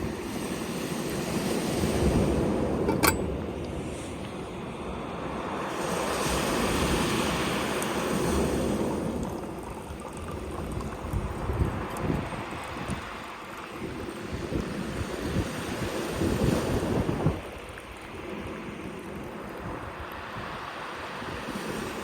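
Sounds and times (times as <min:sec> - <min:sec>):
sea waves washing onto shore: 0:00.0 - 0:22.0
wind buffeting microphone: 0:10.1 - 0:13.2.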